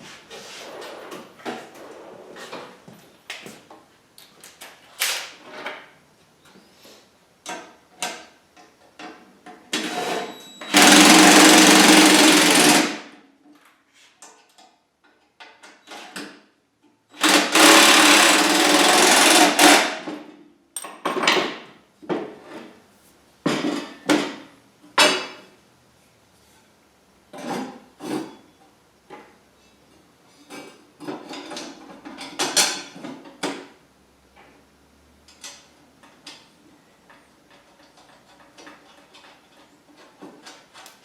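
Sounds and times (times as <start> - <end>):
power tool driving hardware: 9.8 - 13.2, 17.2 - 20.1.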